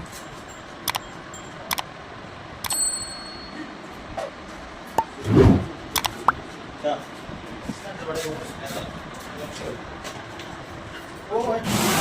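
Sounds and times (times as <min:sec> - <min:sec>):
sharp clicks and taps of tools: 0:06.0 - 0:06.4.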